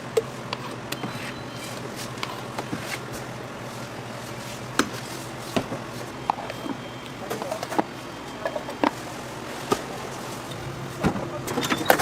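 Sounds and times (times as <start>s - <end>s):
low hum: 10.0s - 12.0s.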